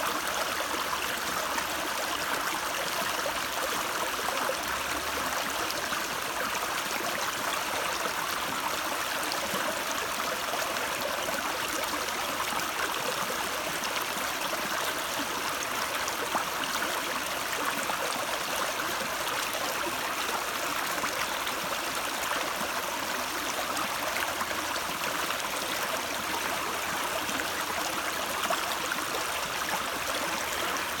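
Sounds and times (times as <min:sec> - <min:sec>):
stream flowing: 0:00.1 - 0:31.0.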